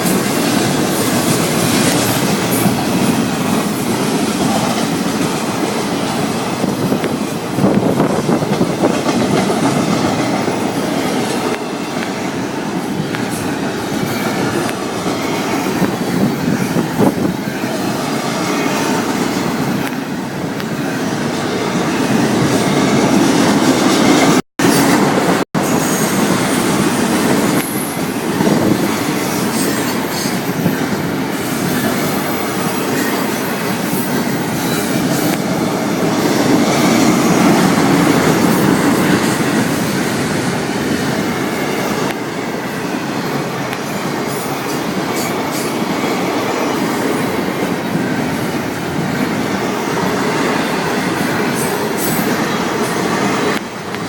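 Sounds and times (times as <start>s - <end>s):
wheels clicking over rail joints: 0.0s - 17.2s
freight train wheels rumbling: 0.0s - 54.0s.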